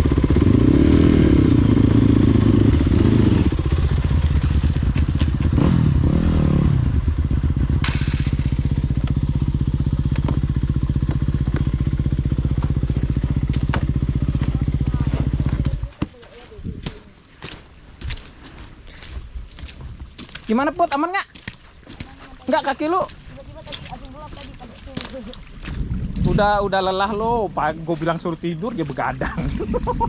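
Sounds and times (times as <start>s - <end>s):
dirt bike engine revving: 0.0s - 16.0s.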